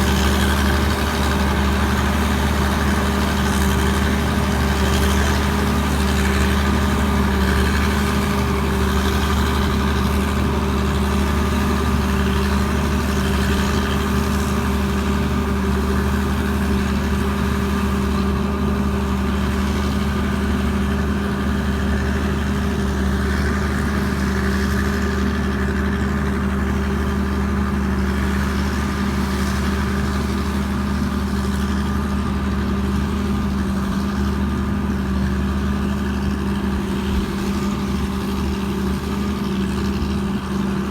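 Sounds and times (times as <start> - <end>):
diesel engine running steadily: 0.0 - 40.9.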